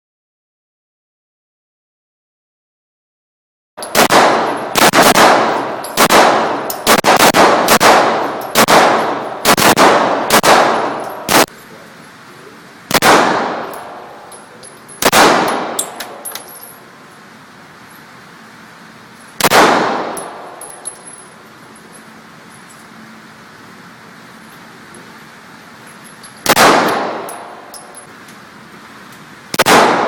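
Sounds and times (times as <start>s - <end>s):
gunshots echoing: 3.8s - 11.5s, 12.9s - 14.3s, 15.0s - 16.3s, 19.4s - 20.6s, 26.4s - 27.7s, 29.6s - 30.0s.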